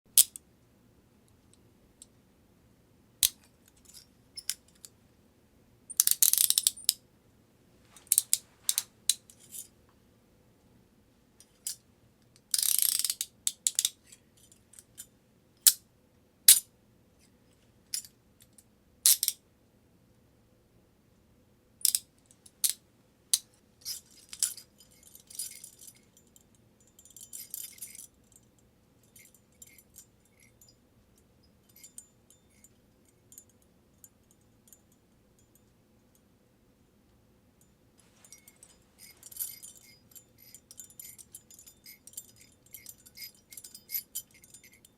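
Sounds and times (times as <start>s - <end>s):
metal handcuffs clicking: 0.2s - 0.4s, 3.2s - 4.9s, 5.9s - 7.0s, 8.0s - 9.7s, 12.4s - 15.1s, 19.1s - 19.4s, 21.8s - 22.8s, 23.4s - 26.1s, 26.9s - 28.1s, 38.2s - 44.9s.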